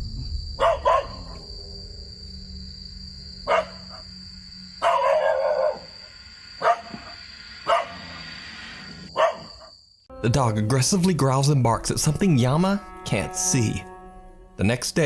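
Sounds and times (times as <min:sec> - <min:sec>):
dog barking: 0:00.6 - 0:01.4, 0:03.5 - 0:04.0, 0:04.8 - 0:05.9, 0:06.6 - 0:08.1, 0:09.2 - 0:09.7.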